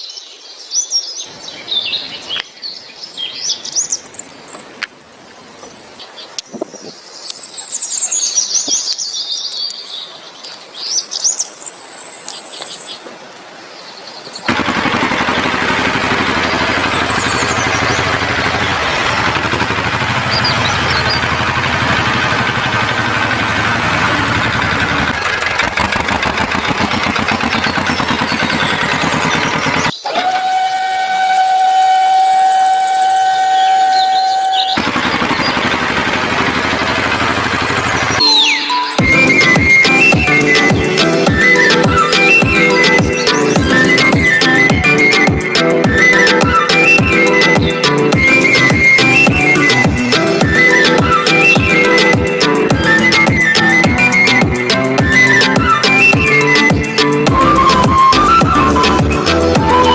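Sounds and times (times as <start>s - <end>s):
loud dense steady noise: 14.5s - 59.9s
bird-like chirping: 16.8s - 21.5s, 37.8s - 54.4s.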